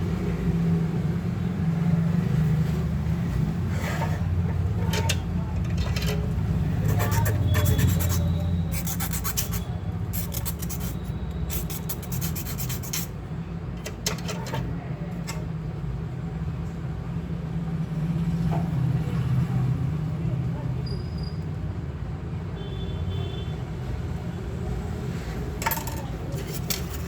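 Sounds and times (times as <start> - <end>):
hand tools scraping and clicking: 3.7 - 13.1, 13.8 - 15.4, 25.6 - 27.0.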